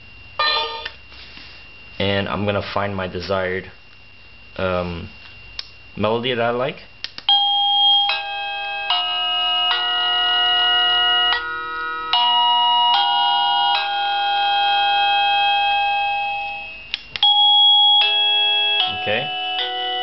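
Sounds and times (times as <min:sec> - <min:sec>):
electronic doorbell chime melody: 0:00.4 - 0:00.9, 0:07.3 - 0:20.0.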